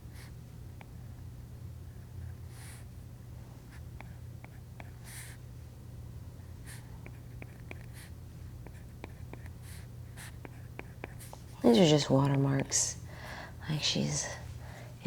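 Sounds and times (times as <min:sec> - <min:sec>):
soft breaths: 0:12.8 - 0:15.0.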